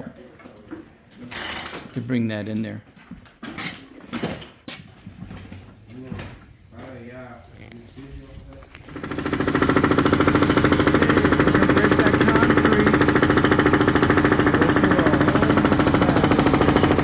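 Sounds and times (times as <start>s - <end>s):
jackhammer breaking concrete: 8.8s - 17.0s.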